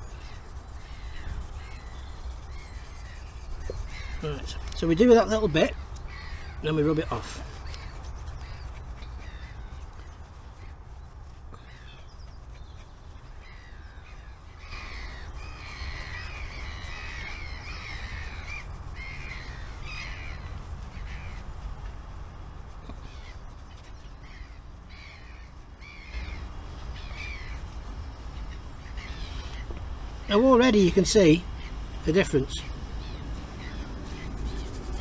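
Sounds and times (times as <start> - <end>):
birds calling: 0.0 - 35.0
steady low rumble: 0.0 - 35.0.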